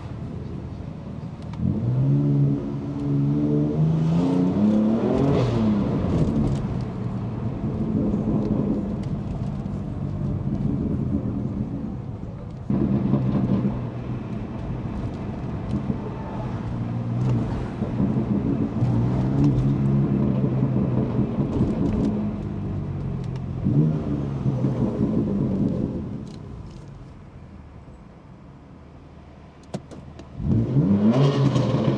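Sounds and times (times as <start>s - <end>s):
car engine revving on the move: 0.0s - 27.3s, 29.6s - 31.9s.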